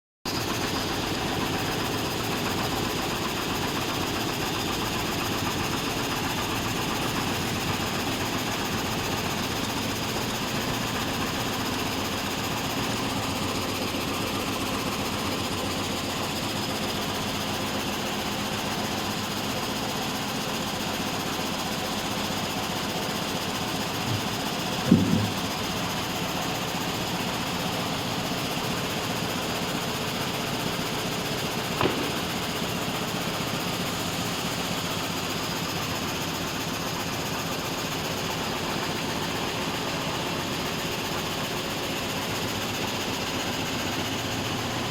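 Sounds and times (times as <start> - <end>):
short knock: 24.1 - 25.5, 31.8 - 32.4.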